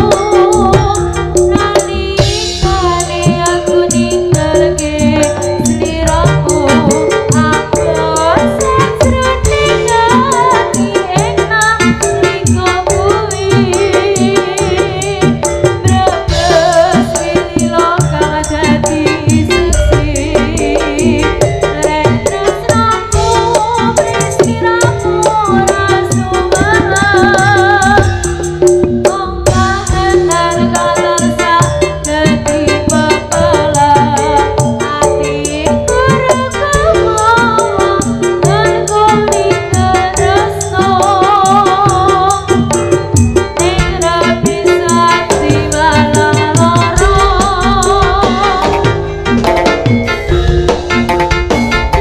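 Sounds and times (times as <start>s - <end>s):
fast drum rhythm: 0.0s - 52.0s
gamelan ensemble music: 0.0s - 52.0s
rattling percussion: 0.0s - 52.0s
wavering melody with vibrato: 0.0s - 52.0s
low drum strokes: 47.0s - 52.0s.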